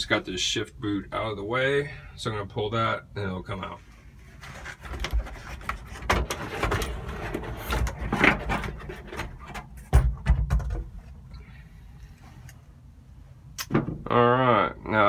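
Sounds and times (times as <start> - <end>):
knocks clatter and scraping: 4.2 - 11.2.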